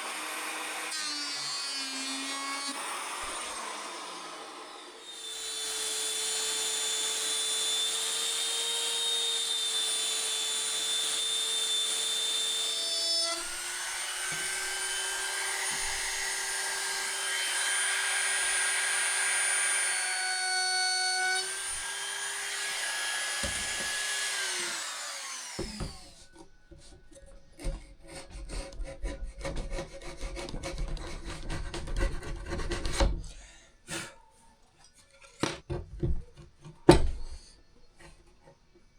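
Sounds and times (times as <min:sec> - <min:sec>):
electric power tool on wood: 0:00.0 - 0:26.3
wood knocking and clattering: 0:35.3 - 0:37.4.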